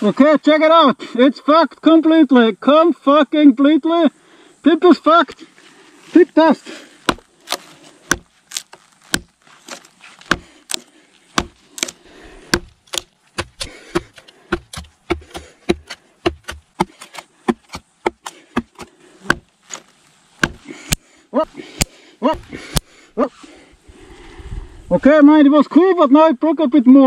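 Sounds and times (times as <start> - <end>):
knife stabbing into wood: 7.0 - 21.0, 21.7 - 22.9.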